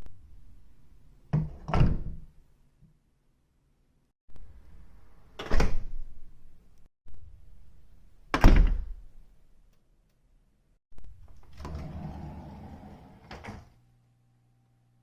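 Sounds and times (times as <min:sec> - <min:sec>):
door rattling and rubbing: 0:11.3 - 0:13.7.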